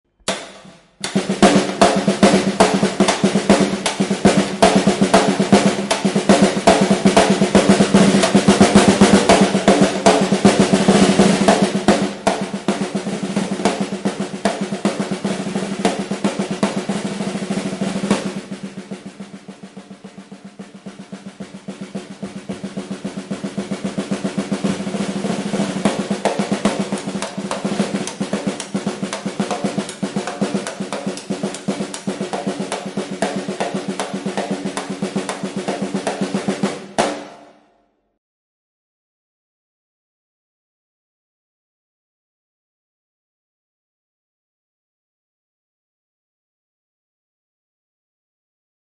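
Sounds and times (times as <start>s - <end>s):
accented drum hit: 0.2s - 37.5s
fast drum roll: 0.3s - 37.4s.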